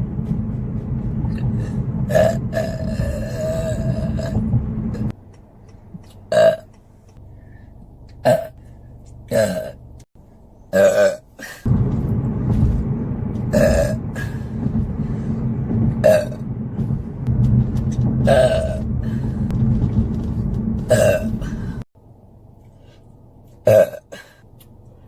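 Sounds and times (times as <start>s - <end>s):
steady low rumble: 0.0s - 10.6s, 11.6s - 25.0s
person burping: 6.3s - 6.7s, 8.2s - 8.5s, 9.3s - 9.8s, 10.7s - 11.3s, 20.9s - 21.4s, 23.7s - 24.4s.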